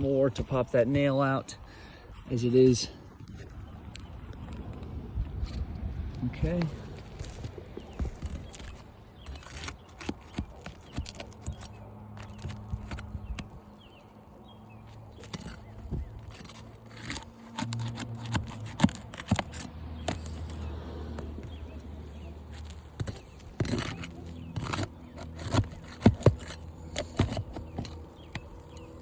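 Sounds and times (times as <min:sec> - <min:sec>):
scrapes and clicks on shingles: 0:06.4 - 0:29.0.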